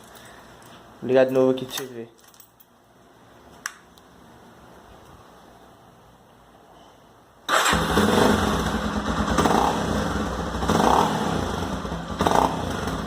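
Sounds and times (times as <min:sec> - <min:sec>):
motorcycle engine starting and running: 0:07.5 - 0:13.0.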